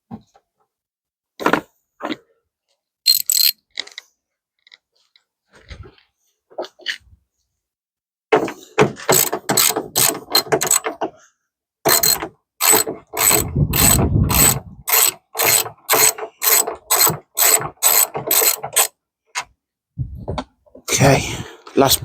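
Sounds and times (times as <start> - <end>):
ratchet spanner clicking: 3.1 - 3.6, 9.1 - 10.9, 11.9 - 18.9.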